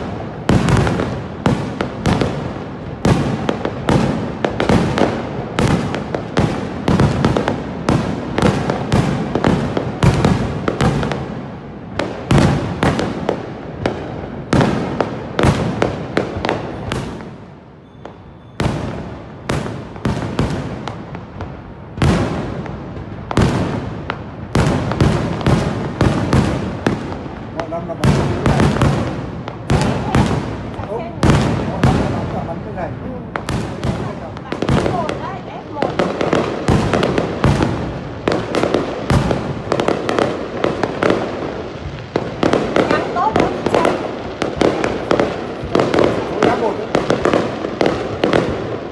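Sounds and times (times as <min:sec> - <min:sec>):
fireworks bangs: 0:00.0 - 0:48.9.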